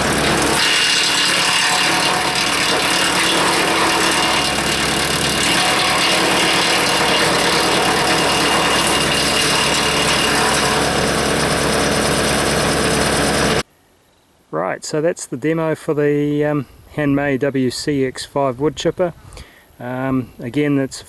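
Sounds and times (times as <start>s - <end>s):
tractor engine running: 0.0s - 13.6s.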